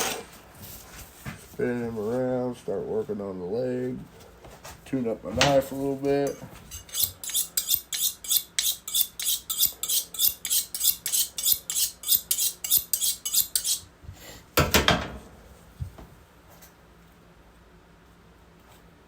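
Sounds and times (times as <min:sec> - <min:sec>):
knife sharpening metal scraping: 0:06.2 - 0:13.9.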